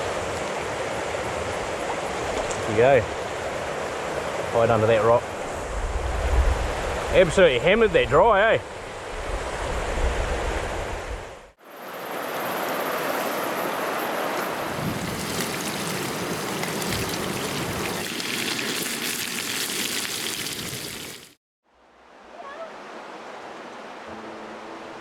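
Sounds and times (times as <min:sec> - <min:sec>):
river water rushing over stones: 0:12.2 - 0:21.4.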